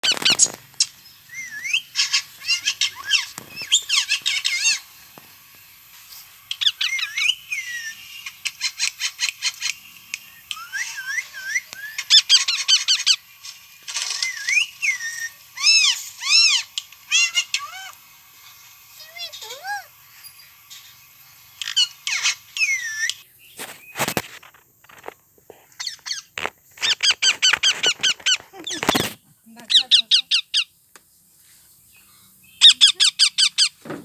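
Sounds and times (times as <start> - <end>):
parrots squawking and screeching: 0.0 - 5.0, 6.5 - 9.8, 10.5 - 13.2, 14.0 - 18.0, 19.0 - 21.0, 21.6 - 24.2, 25.8 - 30.7, 32.6 - 33.8.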